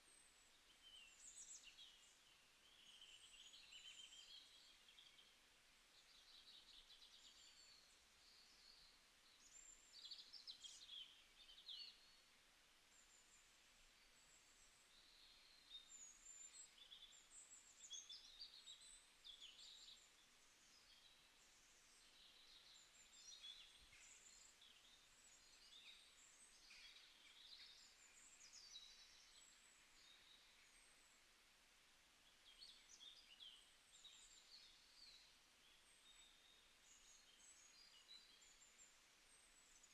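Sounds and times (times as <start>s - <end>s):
soft background hiss: 0.0s - 39.9s.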